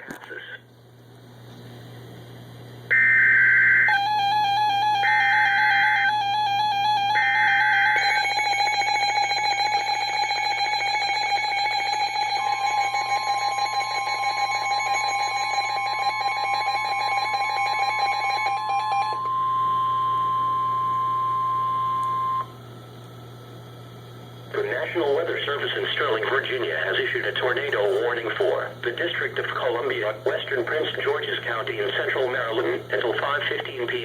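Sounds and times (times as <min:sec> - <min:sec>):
steady electronic alarm tone: 0:02.9 - 0:22.6
warning alarm tone: 0:02.9 - 0:22.6.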